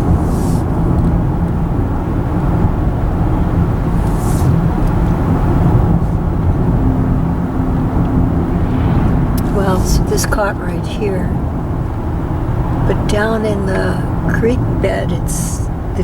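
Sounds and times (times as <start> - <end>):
car road and engine rumble: 0.0 - 16.0
brief hisses: 4.0 - 4.6
faint hum: 7.5 - 11.6.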